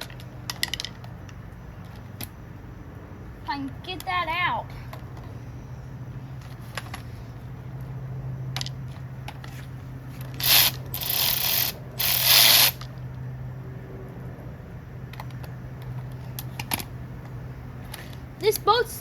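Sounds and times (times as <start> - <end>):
ratchet clicking: 10.3 - 12.9
tool clicks: 10.3 - 12.9.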